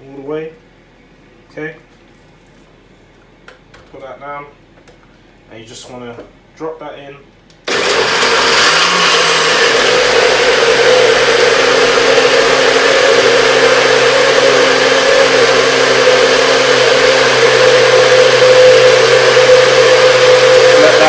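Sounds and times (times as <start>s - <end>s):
electric blender running: 7.7s - 21.0s.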